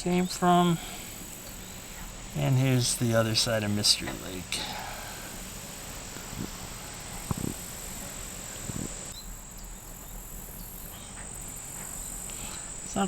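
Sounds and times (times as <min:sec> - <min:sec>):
crickets trilling: 0:00.0 - 0:13.0.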